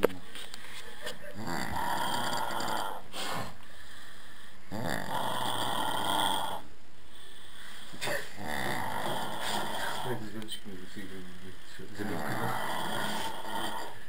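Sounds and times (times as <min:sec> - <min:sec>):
person snoring: 0:01.3 - 0:03.6, 0:04.6 - 0:06.7, 0:07.9 - 0:10.3, 0:11.9 - 0:14.0.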